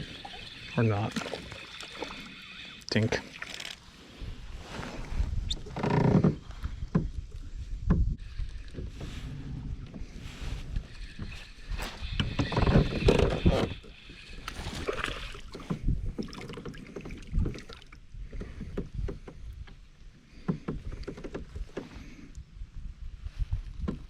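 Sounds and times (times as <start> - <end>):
water sounds: 0.0 - 4.2, 10.0 - 18.6.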